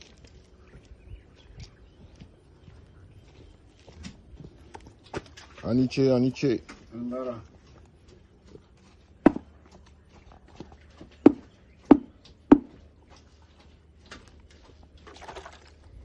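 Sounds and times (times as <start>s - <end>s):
knocks or thuds: 9.2s - 9.5s, 11.2s - 12.7s.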